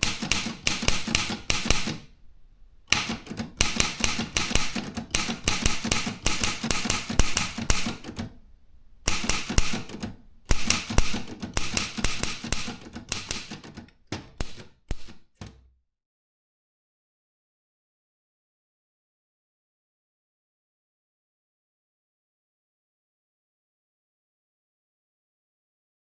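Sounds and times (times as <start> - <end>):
manual typewriter typing: 0.0 - 2.1, 2.9 - 8.4, 9.1 - 15.6.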